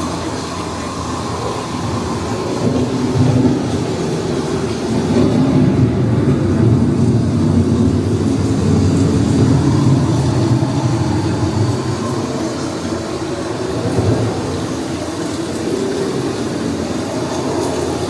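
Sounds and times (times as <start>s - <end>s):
steady low rumble: 0.0s - 18.0s.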